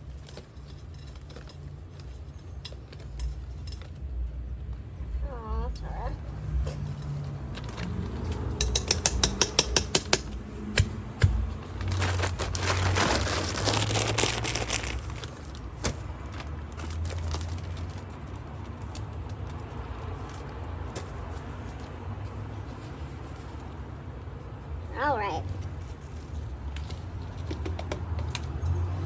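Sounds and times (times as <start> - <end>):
quiet fumbling: 0.0 - 4.8
rustling: 0.0 - 4.8, 10.2 - 28.5
clicks and taps: 8.2 - 11.4.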